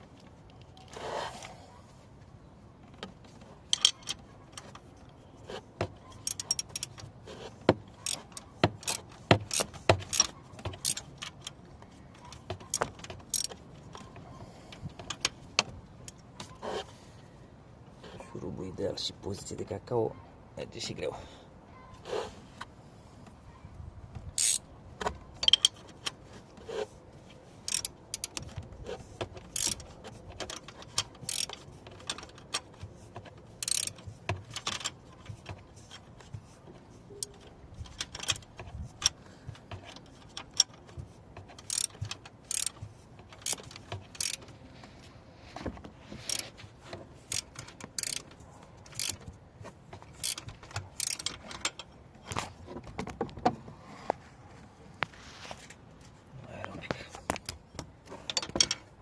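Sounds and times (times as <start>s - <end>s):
ratchet wrench clicking: 3.7s - 4.7s, 6.2s - 7.1s, 7.9s - 11.6s, 12.4s - 13.6s, 24.4s - 24.6s, 25.4s - 25.8s, 27.7s - 32.7s, 33.6s - 36.5s, 41.6s - 44.5s, 46.3s - 46.5s, 47.3s - 48.3s, 48.9s - 49.2s, 50.2s - 51.8s.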